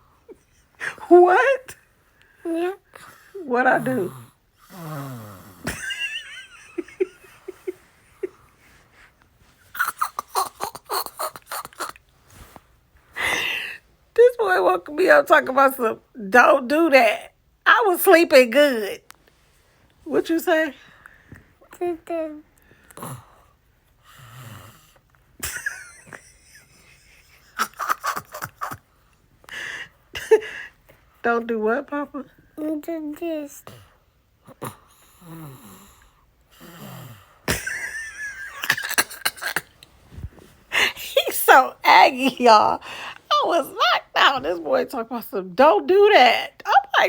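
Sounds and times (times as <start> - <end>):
raspy snoring breath: 3.0 - 5.7, 22.8 - 25.0, 34.6 - 37.5
person laughing: 5.7 - 8.5, 25.4 - 28.8, 37.5 - 39.7.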